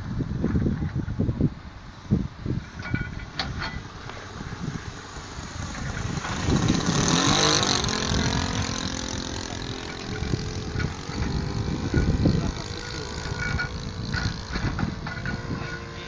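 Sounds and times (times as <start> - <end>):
model airplane flying past: 3.8 - 16.0.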